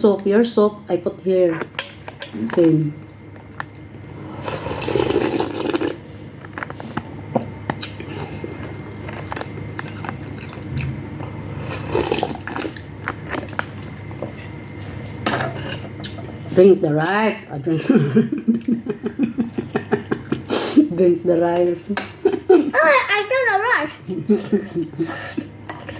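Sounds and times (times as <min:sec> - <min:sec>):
person slurping soup: 0:04.3 - 0:06.0, 0:11.6 - 0:12.7
wet chewing and smacking: 0:06.4 - 0:14.7.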